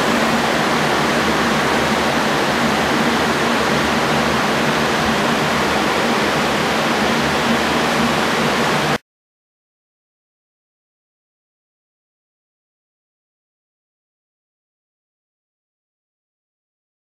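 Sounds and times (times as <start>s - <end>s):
electric fans rushing air: 0.0s - 9.0s.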